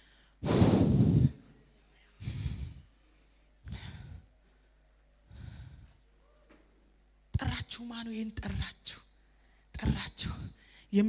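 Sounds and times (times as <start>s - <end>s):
person breathing heavily: 0.0s - 1.5s, 2.2s - 2.9s, 3.6s - 6.0s.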